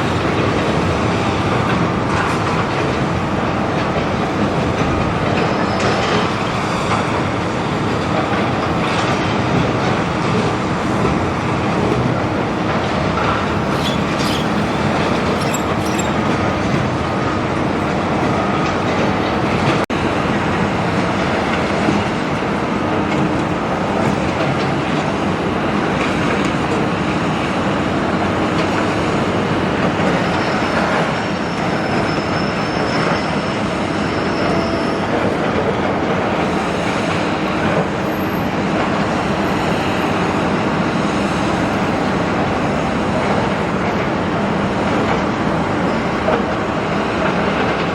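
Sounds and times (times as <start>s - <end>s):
excavator grinding and clanking: 9.9s - 17.7s
high metallic squeal: 13.5s - 16.4s.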